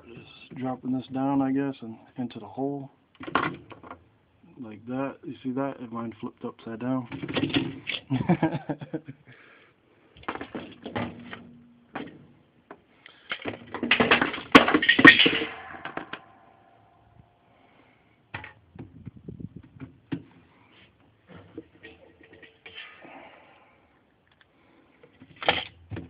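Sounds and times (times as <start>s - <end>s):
machine parts clattering and knocking: 13.3s - 16.3s.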